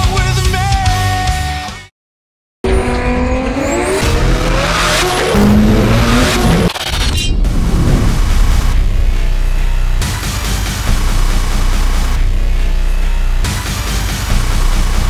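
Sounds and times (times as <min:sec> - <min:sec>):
car engine at full throttle: 0:02.7 - 0:13.5.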